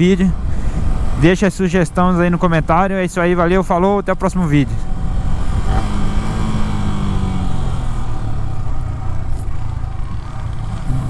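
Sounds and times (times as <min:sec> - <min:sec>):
motorcycle engine running: 0:04.1 - 0:11.0.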